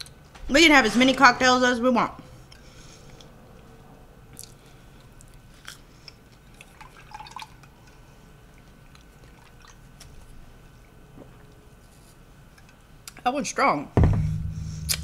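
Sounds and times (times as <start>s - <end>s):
wet mouth clicks: 4.4s - 4.6s.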